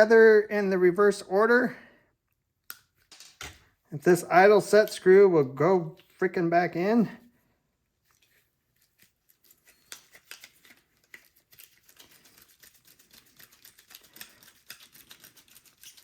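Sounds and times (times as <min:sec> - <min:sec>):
small metallic clicks and scrapes: 0:08.1 - 0:16.0.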